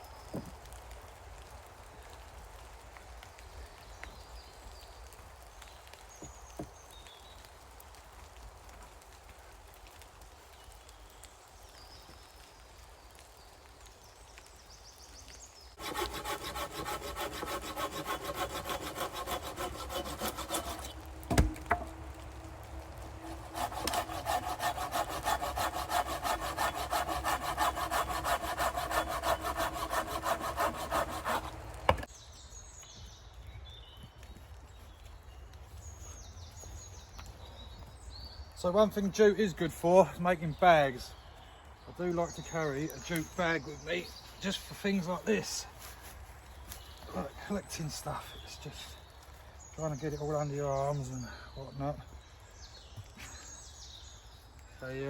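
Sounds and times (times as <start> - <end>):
hand saw cutting wood: 15.8 - 32.1
sharp knock: 21.2 - 21.9.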